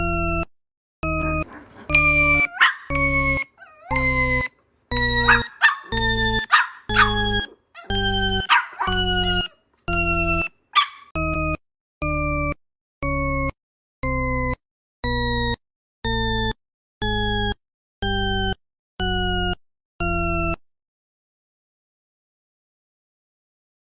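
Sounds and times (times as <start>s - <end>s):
short buzzy electronic tones: 0.0s - 10.5s
puppy barking: 1.3s - 4.4s, 5.0s - 9.5s, 10.7s - 11.2s.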